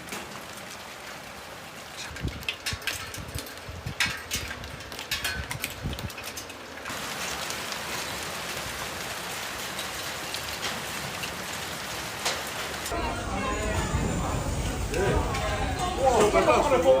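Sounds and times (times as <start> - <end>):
steady rushing hiss: 5.8 - 17.0.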